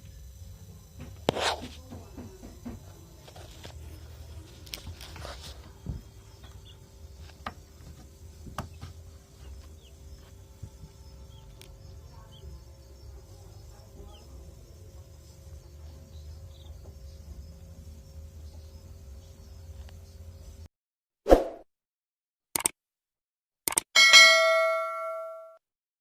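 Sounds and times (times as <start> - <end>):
steady low hum: 0.0 - 20.7
sharp clicks: 22.6 - 22.8, 23.6 - 23.9.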